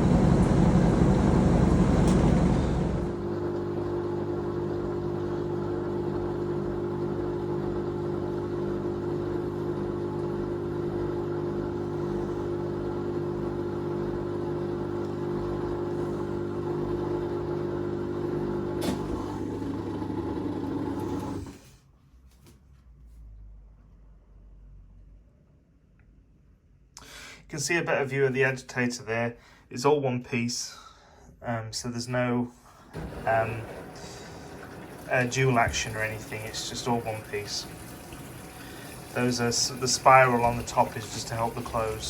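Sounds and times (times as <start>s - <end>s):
washing machine motor hum: 0.0s - 21.7s, 32.8s - 42.0s.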